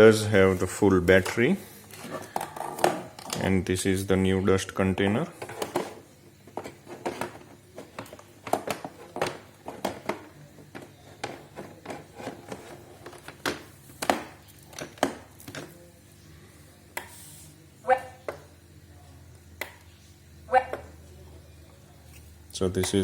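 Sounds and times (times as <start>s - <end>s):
plastic clicks and knocks: 5.4s - 15.7s.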